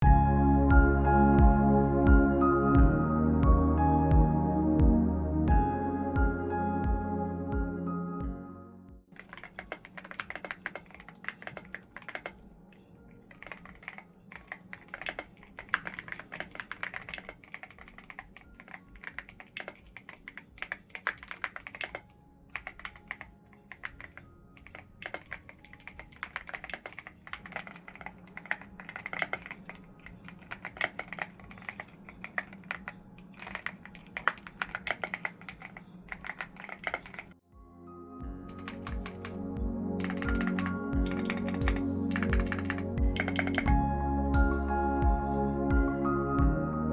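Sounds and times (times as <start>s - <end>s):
mechanical keyboard typing: 9.1s - 12.5s, 13.2s - 37.4s, 38.5s - 43.8s.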